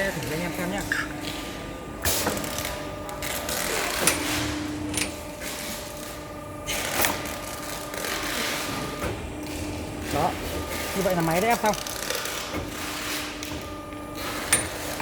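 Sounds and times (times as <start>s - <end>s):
machine hum: 0.0s - 15.0s.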